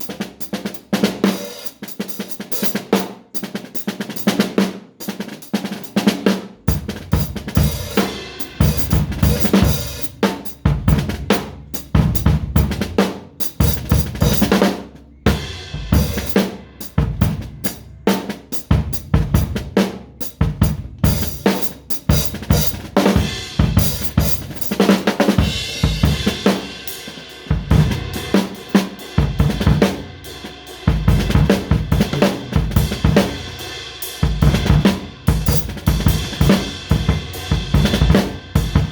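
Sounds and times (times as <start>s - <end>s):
drum kit playing: 0.0s - 38.9s.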